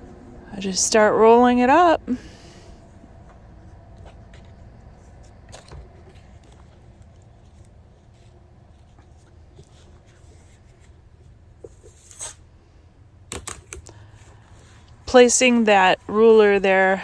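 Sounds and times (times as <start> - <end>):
steady low hum: 0.0 - 17.0
fabric rustling: 1.7 - 12.4.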